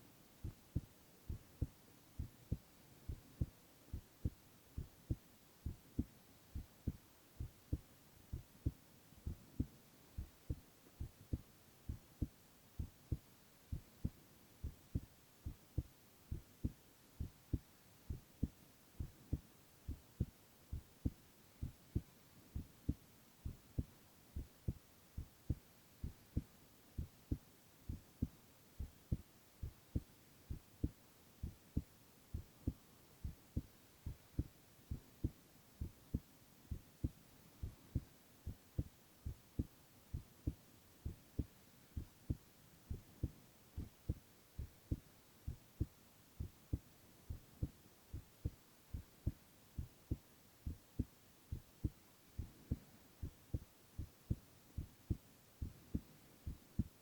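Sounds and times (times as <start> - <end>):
heartbeat thumps: 0.4 - 57.0.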